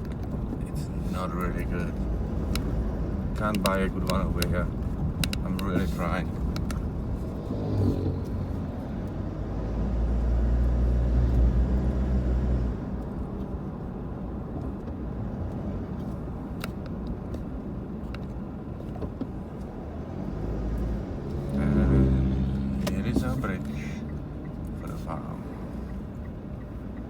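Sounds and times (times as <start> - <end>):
car engine and road rumble: 0.0 - 27.0
sharp clicks: 2.4 - 6.9.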